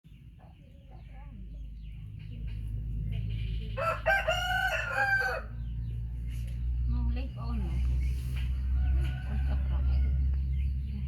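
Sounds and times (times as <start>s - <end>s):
rooster crowing: 3.8s - 5.7s, 8.6s - 10.4s.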